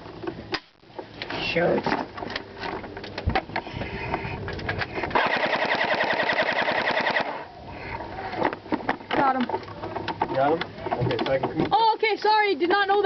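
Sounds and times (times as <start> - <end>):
airsoft gun full-auto burst: 5.2 - 7.4.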